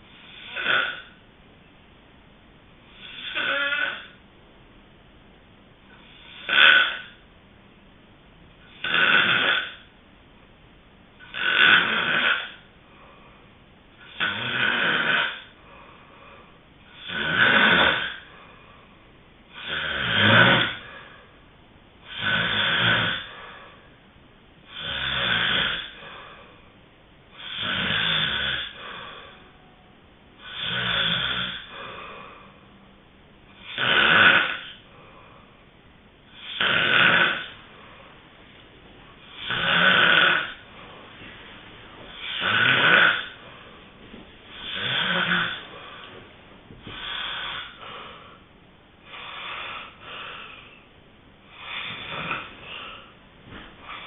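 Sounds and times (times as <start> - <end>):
person snoring: 0.1 - 1.2, 2.9 - 4.2, 6.0 - 7.2, 8.7 - 9.9, 11.2 - 12.6, 14.0 - 18.4, 19.5 - 21.2, 22.0 - 23.8, 24.7 - 26.6, 27.3 - 29.5, 30.4 - 32.6, 33.6 - 35.5, 36.3 - 38.1, 39.2 - 41.0, 42.1 - 43.8, 44.5 - 46.1, 46.9 - 50.8, 51.5 - 53.2
quiet breathing: 12.3 - 17.3, 17.9 - 20.0, 20.6 - 33.8, 34.4 - 36.7, 37.3 - 54.0.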